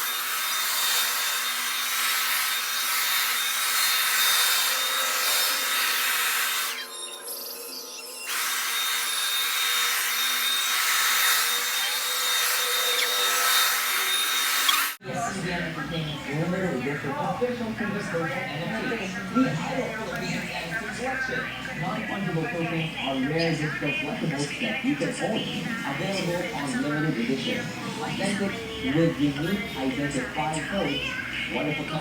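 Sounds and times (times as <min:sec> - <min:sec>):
hair dryer blowing: 0:00.0 - 0:06.8, 0:08.3 - 0:15.0.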